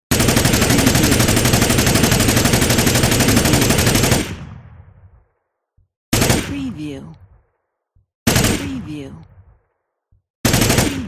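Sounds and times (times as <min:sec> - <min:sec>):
gunfire echo: 0:00.6 - 0:05.3, 0:06.1 - 0:06.8, 0:10.5 - 0:11.0.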